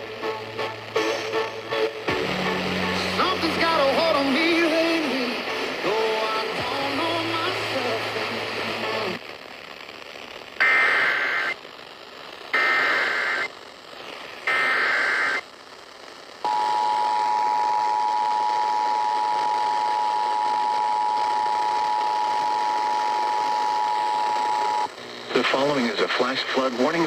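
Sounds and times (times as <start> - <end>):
radio hiss: 0.0 - 27.0.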